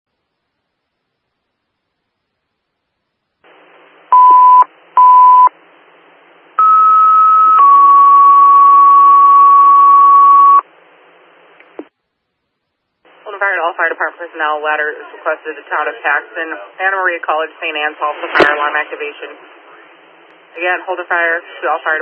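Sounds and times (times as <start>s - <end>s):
radio hiss: 3.4s - 6.6s, 13.0s - 22.0s
short beeps: 4.2s - 5.5s, 6.6s - 10.6s.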